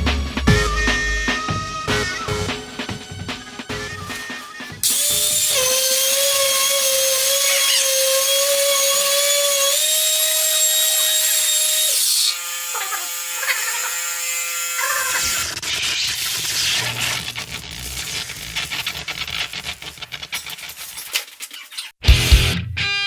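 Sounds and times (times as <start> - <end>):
power tool motor whining: 4.0 - 19.1.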